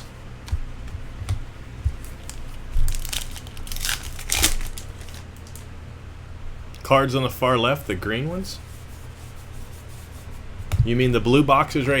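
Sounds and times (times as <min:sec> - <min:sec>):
card packs crinkling and rustling: 0:01.9 - 0:05.7.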